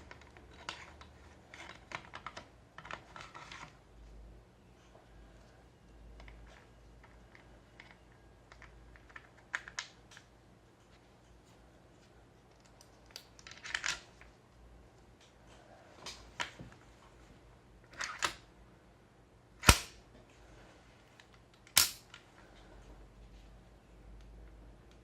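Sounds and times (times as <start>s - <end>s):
airsoft rifle shots: 19.6s - 20.0s
rifle handling clacks and clicks: 21.2s - 22.2s.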